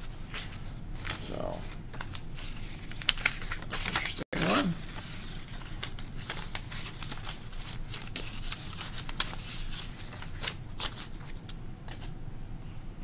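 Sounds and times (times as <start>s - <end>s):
paper rustling and sliding: 0.0s - 12.1s.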